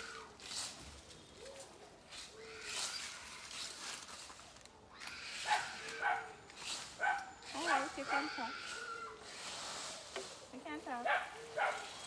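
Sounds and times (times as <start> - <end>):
dogs barking: 5.4 - 6.3, 7.0 - 7.3, 11.0 - 12.0.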